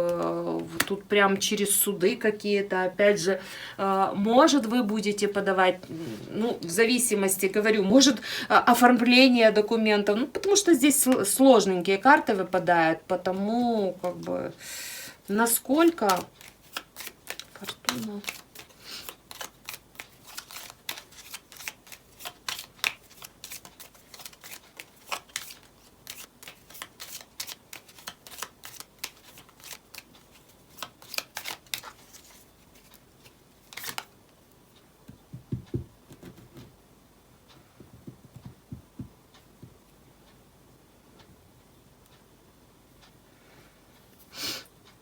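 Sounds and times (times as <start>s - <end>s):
cards being shuffled: 15.8s - 34.1s, 35.4s - 36.7s
soft low thumps: 35.1s - 36.7s, 37.8s - 39.8s.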